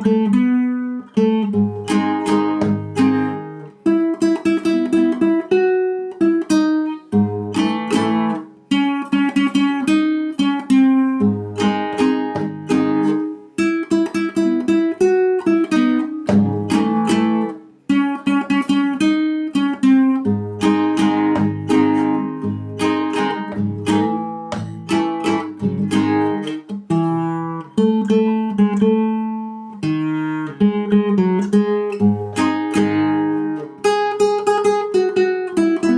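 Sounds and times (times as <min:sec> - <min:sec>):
acoustic guitar: 0:00.0 - 0:35.9.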